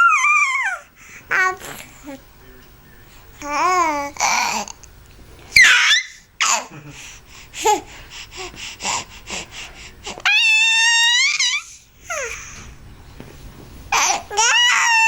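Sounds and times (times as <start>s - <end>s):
bird squealing: 5.6s - 6.2s.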